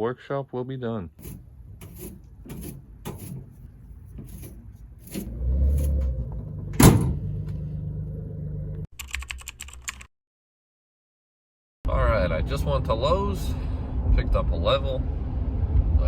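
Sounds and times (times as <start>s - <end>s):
car engine running: 1.3s - 8.9s
door slamming: 6.2s - 7.4s.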